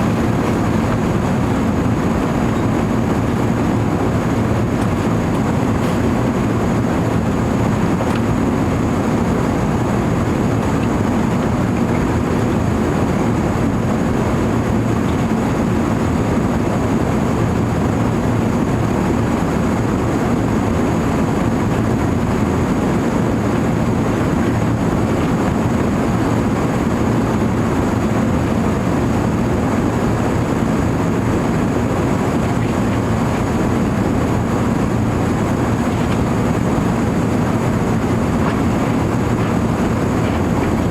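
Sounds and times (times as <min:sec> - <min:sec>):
airplane cabin engine noise: 0:00.0 - 0:40.9.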